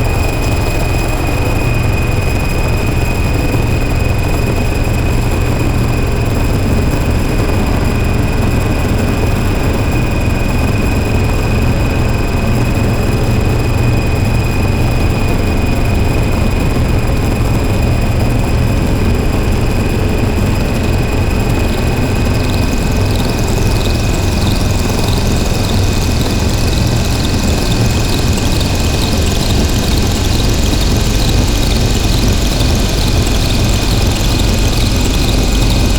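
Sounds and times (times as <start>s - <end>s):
harsh noise drone: 20.1s - 35.9s.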